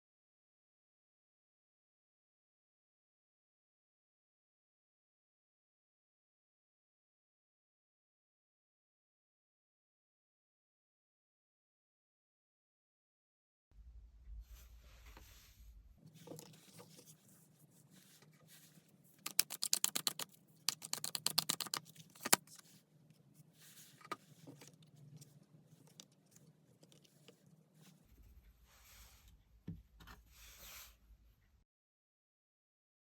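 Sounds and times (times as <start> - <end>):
rapid card clicks: 19.2 - 22.6
cards tapping and rustling: 19.2 - 22.7.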